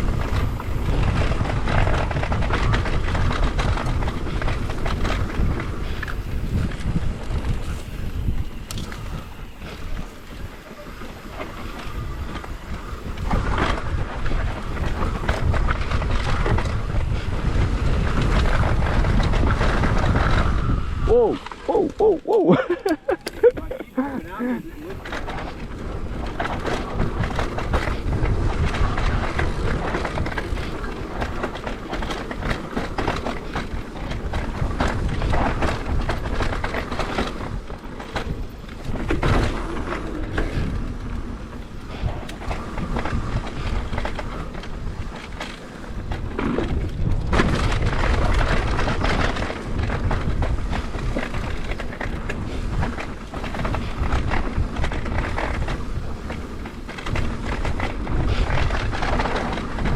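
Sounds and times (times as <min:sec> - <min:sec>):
bike rattling over ruts: 0:00.0 - 0:59.9
bike tyres on dirt: 0:00.0 - 0:59.9
wind buffeting microphone: 0:00.0 - 0:59.9.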